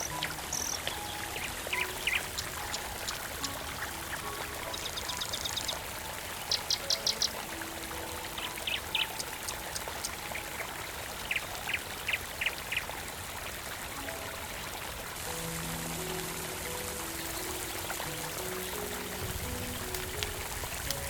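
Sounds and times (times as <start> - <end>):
bird chirping: 0.0 - 7.5, 8.3 - 10.6, 11.2 - 12.8
stream water rushing: 0.0 - 21.0.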